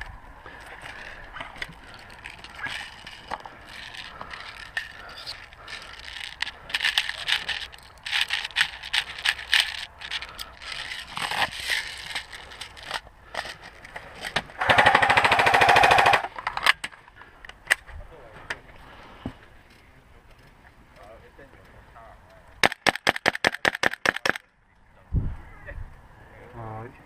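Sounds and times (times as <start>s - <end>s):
airsoft guns firing: 14.6s - 16.3s, 22.6s - 24.4s
rapid full-auto burst: 14.6s - 16.3s.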